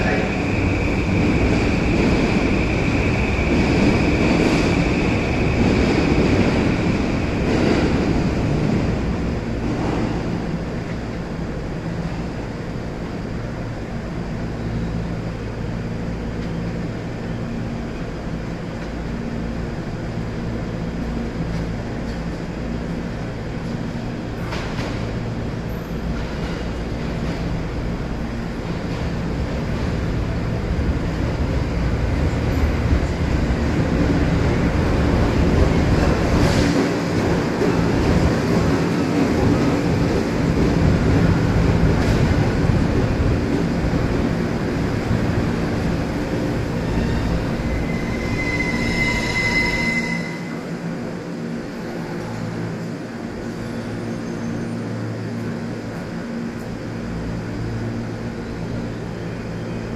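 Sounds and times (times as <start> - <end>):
electric train low hum: 0.0 - 59.9
electric train high tone: 45.1 - 51.1.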